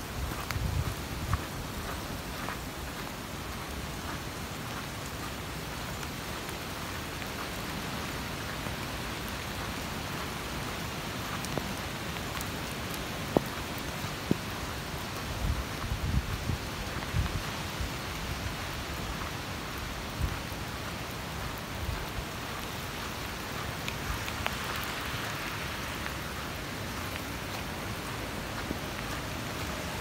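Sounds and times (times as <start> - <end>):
steady rain hiss: 0.0 - 30.0.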